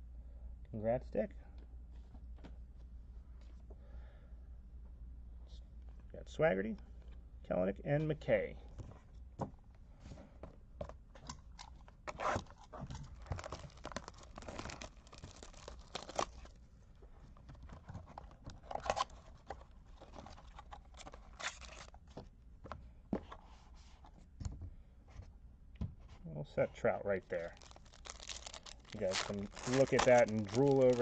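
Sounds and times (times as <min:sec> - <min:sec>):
plastic wrapping tearing and crinkling: 0:12.1 - 0:16.6, 0:20.0 - 0:22.0, 0:27.4 - 0:31.0
handling clicks and rustles: 0:27.3 - 0:31.0.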